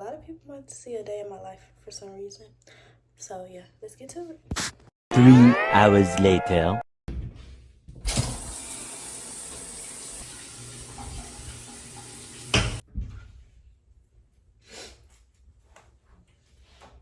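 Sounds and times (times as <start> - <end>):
water running from a tap: 8.1 - 12.8
tap shutting off clunk: 12.4 - 12.8.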